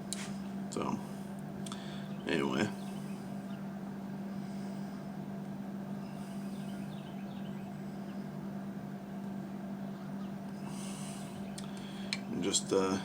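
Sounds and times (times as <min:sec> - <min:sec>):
low mechanical hum: 0:00.0 - 0:13.0
faint bird chirps: 0:05.9 - 0:08.6, 0:09.8 - 0:12.4.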